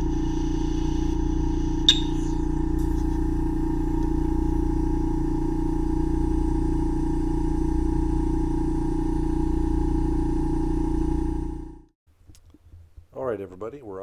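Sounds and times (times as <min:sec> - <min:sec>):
ear suction whistling hum: 0:00.0 - 0:08.0.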